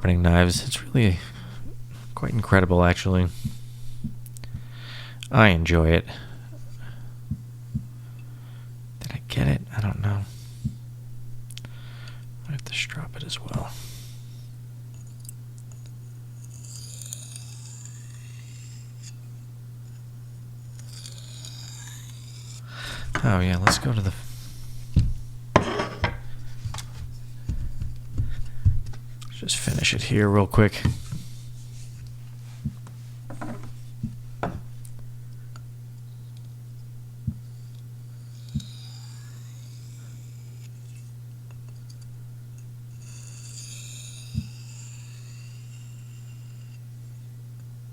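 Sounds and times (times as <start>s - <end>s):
steady low hum: 0.0s - 47.9s
blade scraping on sharpening surface: 16.4s - 19.2s, 20.8s - 22.6s, 25.6s - 26.2s, 38.2s - 41.1s, 43.0s - 46.9s.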